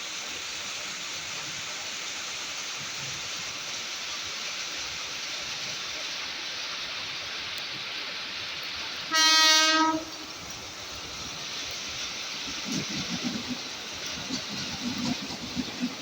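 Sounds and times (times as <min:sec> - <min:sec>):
rain hiss: 0:00.0 - 0:16.0
electric train horn blast: 0:09.1 - 0:10.7.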